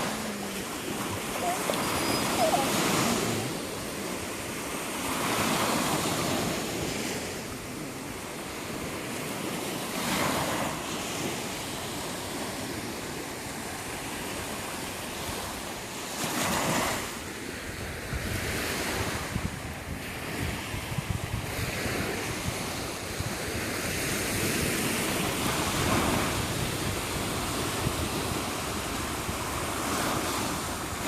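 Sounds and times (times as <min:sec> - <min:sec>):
sea waves breaking on beach: 0:00.0 - 0:31.0
wind buffeting microphone: 0:17.9 - 0:31.0.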